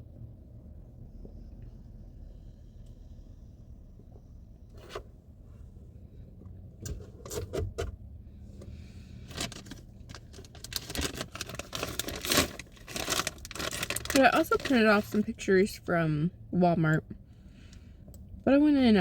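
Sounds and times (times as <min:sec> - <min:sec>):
candy packaging rustling: 0:09.3 - 0:15.4.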